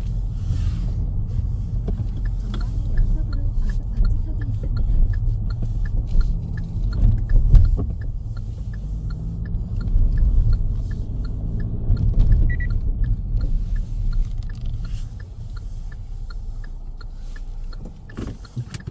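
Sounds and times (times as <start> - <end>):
car engine and road rumble: 0.0 - 18.9
turn signal ticking: 0.0 - 18.9
short beep: 12.5 - 12.8.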